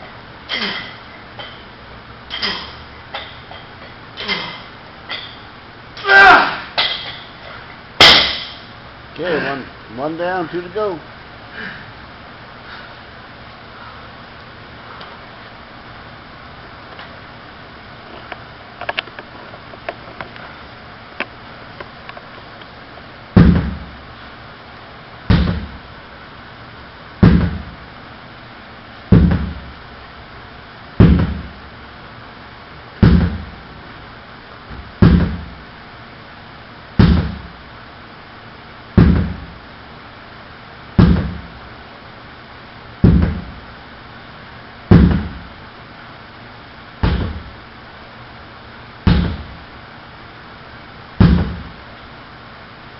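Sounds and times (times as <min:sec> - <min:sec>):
sledgehammer strikes: 0:08.0 - 0:08.7, 0:23.4 - 0:23.9, 0:25.3 - 0:25.8, 0:27.2 - 0:27.8, 0:29.1 - 0:29.7, 0:31.0 - 0:31.5, 0:33.0 - 0:33.5, 0:34.8 - 0:35.6, 0:37.0 - 0:37.6, 0:39.0 - 0:39.6, 0:41.0 - 0:41.6, 0:43.0 - 0:43.6, 0:44.9 - 0:45.5, 0:47.0 - 0:47.6, 0:49.1 - 0:49.6, 0:51.2 - 0:51.8.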